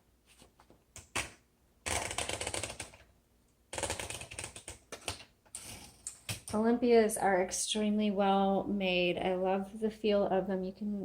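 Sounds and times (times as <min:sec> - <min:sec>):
manual typewriter typing: 0:01.9 - 0:03.0.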